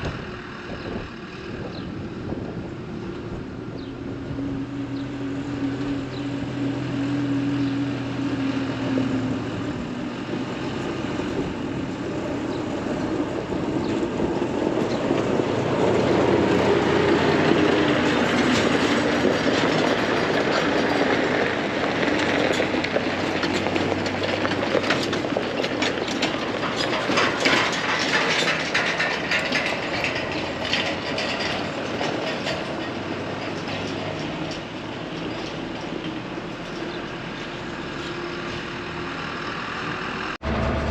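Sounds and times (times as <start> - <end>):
tractor engine running: 0.0 - 40.9
baler mechanism clattering: 23.9 - 36.8.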